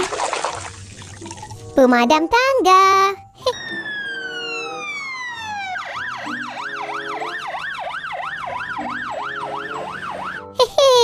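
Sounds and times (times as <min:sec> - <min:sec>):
electronic siren wailing and yelping: 0:03.5 - 0:10.6.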